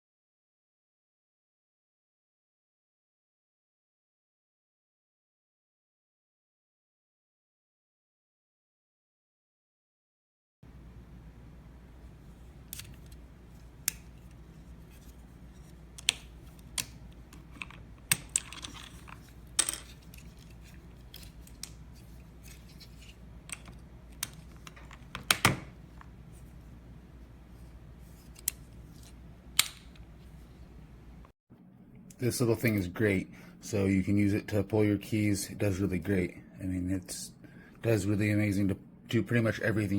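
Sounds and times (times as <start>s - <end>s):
keycap puller clicking and scraping: 16.0s - 21.7s.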